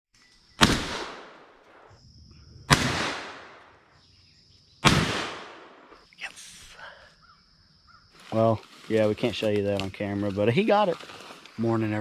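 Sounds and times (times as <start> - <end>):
shotgun shots echoing: 0.6 - 1.9, 2.7 - 3.8, 4.8 - 5.9.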